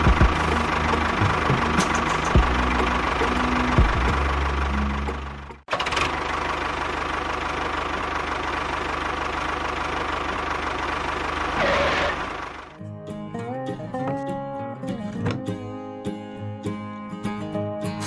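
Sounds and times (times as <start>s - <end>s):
engine running: 0.0s - 12.8s.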